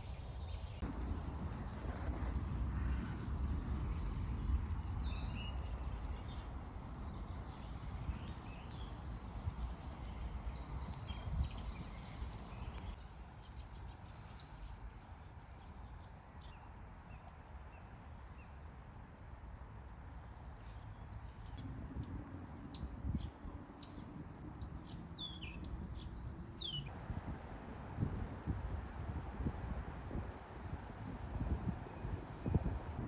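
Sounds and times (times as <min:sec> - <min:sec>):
songbirds singing and chirping: 0:00.0 - 0:00.8, 0:02.8 - 0:17.4, 0:22.4 - 0:33.0
low steady rumble: 0:00.0 - 0:08.4, 0:26.9 - 0:33.0.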